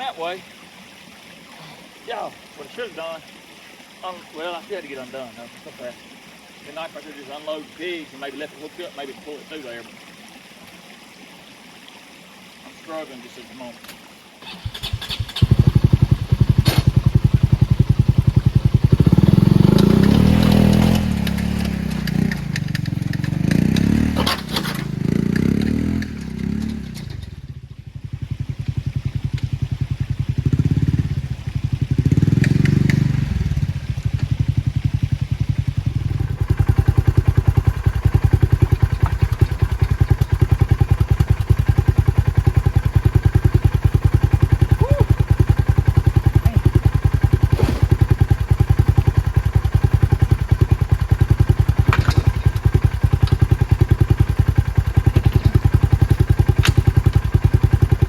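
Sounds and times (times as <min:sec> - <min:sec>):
utility vehicle engine revving: 0:14.4 - 0:58.0.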